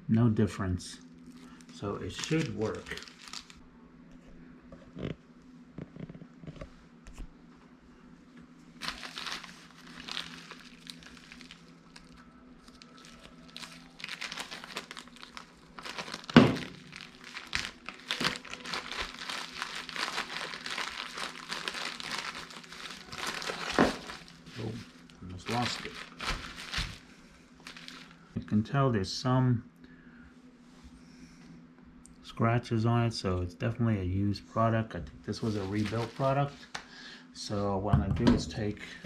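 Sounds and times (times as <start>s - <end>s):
faint low hum: 0.0s - 39.0s
packaging crinkling: 1.2s - 3.6s, 8.8s - 28.3s, 35.4s - 36.6s.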